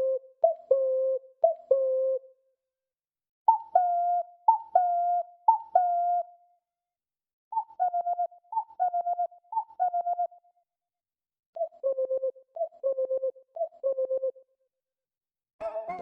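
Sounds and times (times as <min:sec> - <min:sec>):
ocarina cuckoo calls: 0:00.0 - 0:02.3, 0:03.5 - 0:06.4, 0:07.5 - 0:10.4, 0:11.6 - 0:14.4.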